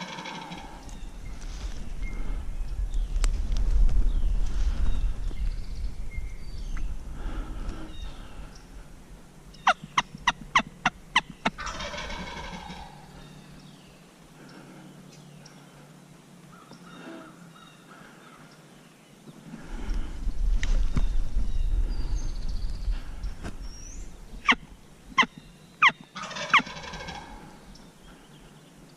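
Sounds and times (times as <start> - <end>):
turkey rattling gobble: 0.0 - 0.8, 9.6 - 13.1, 26.2 - 27.5
wild turkey calling: 0.0 - 1.0, 9.5 - 14.7, 24.4 - 28.5.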